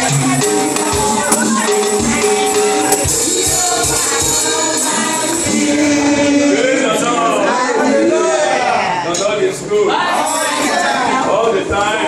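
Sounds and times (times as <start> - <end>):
tambourine jingling: 0.0 - 6.0
people singing: 0.0 - 9.2, 9.8 - 12.0.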